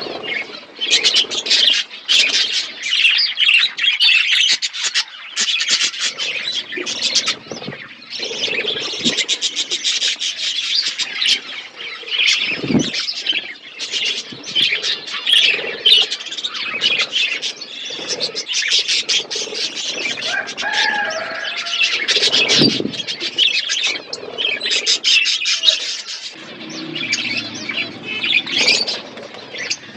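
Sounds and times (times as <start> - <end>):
budgies chirping and warbling: 0.0 - 29.9
wing flaps: 6.1 - 25.2.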